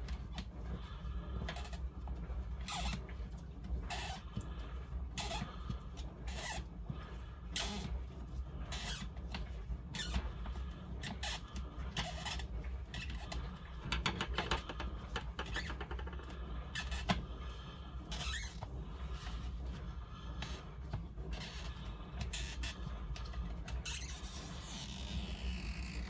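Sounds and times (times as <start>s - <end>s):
low steady hum: 0.0s - 26.0s
scrapes and clicks on plastic: 8.6s - 26.0s.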